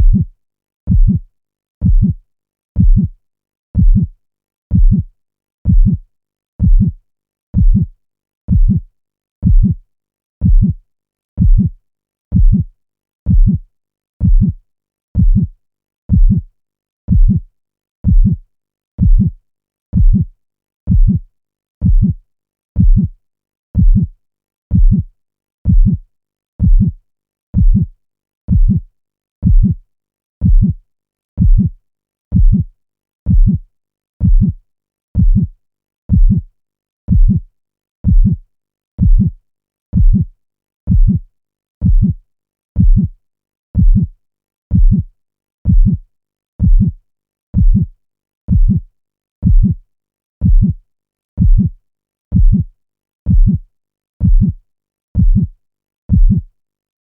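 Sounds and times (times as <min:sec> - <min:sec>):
heartbeat double thump: 0:00.0 - 0:00.2, 0:00.9 - 0:01.2, 0:01.8 - 0:02.2, 0:02.8 - 0:03.1, 0:03.8 - 0:04.1, 0:04.7 - 0:05.0, 0:05.7 - 0:06.0, 0:06.6 - 0:07.0, 0:07.6 - 0:07.9, 0:08.5 - 0:08.8, 0:09.4 - 0:09.8, 0:10.4 - 0:10.8, 0:11.4 - 0:11.7, 0:12.3 - 0:12.6, 0:13.3 - 0:13.6, 0:14.2 - 0:14.6, 0:15.2 - 0:15.5, 0:16.1 - 0:16.4, 0:17.1 - 0:17.4, 0:18.0 - 0:18.4, 0:19.0 - 0:19.3, 0:20.0 - 0:20.2, 0:20.9 - 0:21.2, 0:21.8 - 0:22.2, 0:22.8 - 0:23.1, 0:23.8 - 0:24.1, 0:24.7 - 0:25.0, 0:25.7 - 0:26.0, 0:26.6 - 0:27.0, 0:27.6 - 0:27.8, 0:28.5 - 0:28.8, 0:29.4 - 0:29.8, 0:30.4 - 0:30.7, 0:31.4 - 0:31.7, 0:32.3 - 0:32.6, 0:33.3 - 0:33.6, 0:34.2 - 0:34.6, 0:35.2 - 0:35.5, 0:36.1 - 0:36.4, 0:37.1 - 0:37.4, 0:38.0 - 0:38.4, 0:39.0 - 0:39.3, 0:40.0 - 0:40.2, 0:40.9 - 0:41.2, 0:41.8 - 0:42.1, 0:42.8 - 0:43.1, 0:43.8 - 0:44.1, 0:44.7 - 0:45.0, 0:45.7 - 0:46.0, 0:46.6 - 0:47.0, 0:47.6 - 0:47.8, 0:48.5 - 0:48.8, 0:49.4 - 0:49.8, 0:50.4 - 0:50.7, 0:51.4 - 0:51.7, 0:52.3 - 0:52.6, 0:53.3 - 0:53.6, 0:54.2 - 0:54.5, 0:55.2 - 0:55.4, 0:56.1 - 0:56.4.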